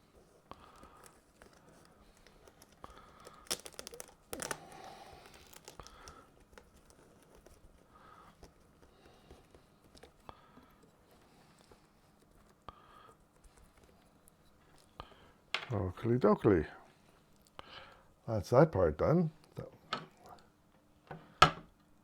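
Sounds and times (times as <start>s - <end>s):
fabric ripping: 0.9s - 7.6s.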